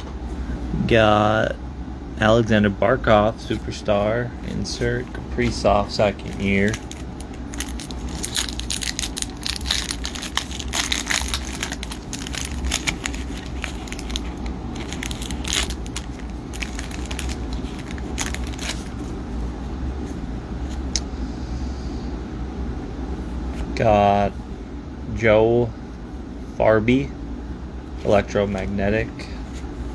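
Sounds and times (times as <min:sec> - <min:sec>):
foil wrapper crinkling and tearing: 0:04.5 - 0:19.2.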